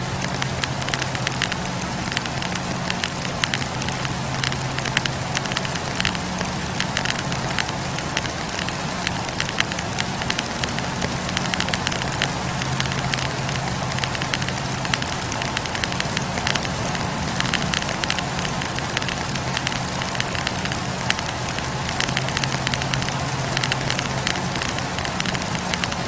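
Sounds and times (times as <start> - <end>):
campfire crackling and popping: 0.0 - 26.0
low steady hum: 0.0 - 26.0
steady rushing noise: 0.0 - 26.0.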